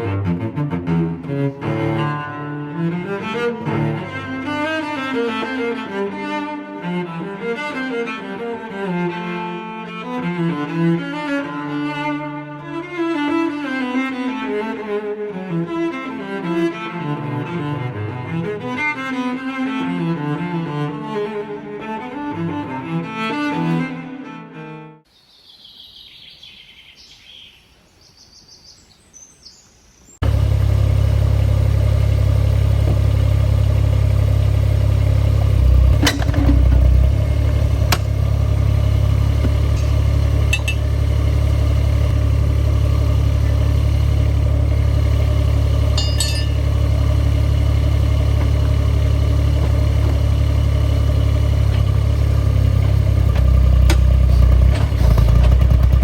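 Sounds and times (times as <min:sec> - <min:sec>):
loud low engine rumble: 0:00.0 - 0:23.2, 0:30.2 - 0:56.0
cello music: 0:00.0 - 0:25.1, 0:32.1 - 0:56.0
faint birdsong: 0:25.1 - 0:30.2.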